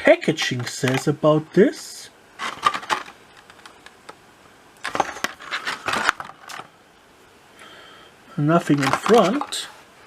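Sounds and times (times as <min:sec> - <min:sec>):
packaging clicks and rustles: 0:02.4 - 0:04.0, 0:04.8 - 0:06.7, 0:08.6 - 0:09.7.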